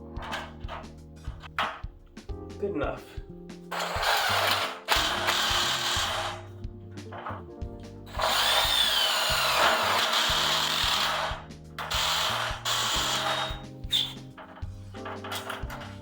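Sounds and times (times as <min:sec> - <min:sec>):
power drill boring: 0:03.7 - 0:06.5, 0:08.1 - 0:14.5.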